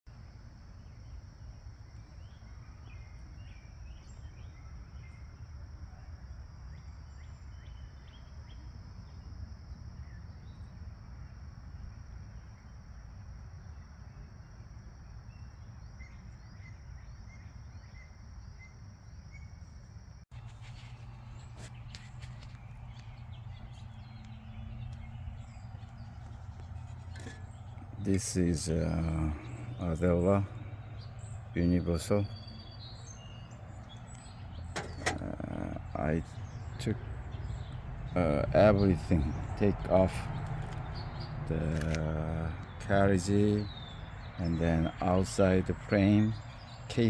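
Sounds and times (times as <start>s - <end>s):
bird chirps: 0.7s - 9.3s, 20.3s - 47.0s
steady low hum: 20.3s - 43.8s
steady low rumble: 20.4s - 43.1s
sharp clicks: 33.9s - 35.4s.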